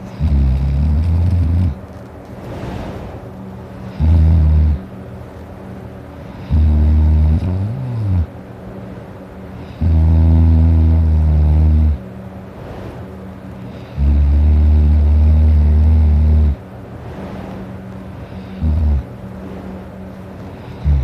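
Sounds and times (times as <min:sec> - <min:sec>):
man snoring loudly: 0:00.1 - 0:01.8, 0:03.9 - 0:04.8, 0:06.3 - 0:08.3, 0:09.8 - 0:12.0, 0:13.7 - 0:16.6, 0:18.4 - 0:19.1, 0:20.7 - 0:21.0.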